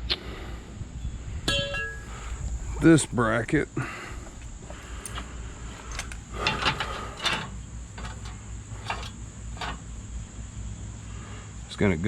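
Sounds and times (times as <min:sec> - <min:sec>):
steel clunks and scrapes: 0:01.5 - 0:03.2, 0:04.2 - 0:10.1.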